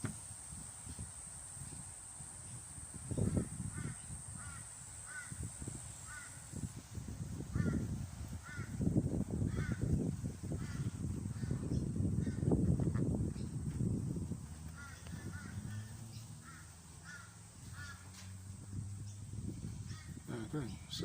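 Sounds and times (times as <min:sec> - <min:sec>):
bird calling: 0:03.2 - 0:06.5, 0:14.6 - 0:18.3, 0:19.0 - 0:21.0.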